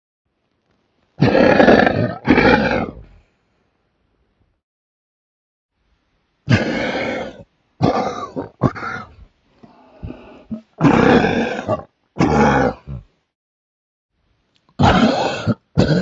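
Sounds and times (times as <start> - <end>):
man coughing: 14.8 - 16.0.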